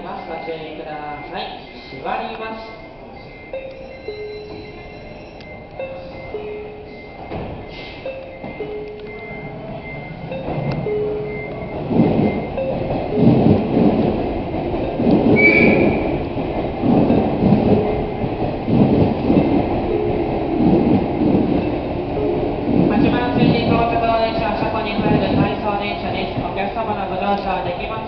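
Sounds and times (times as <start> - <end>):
train rumbling: 0.0 - 28.0.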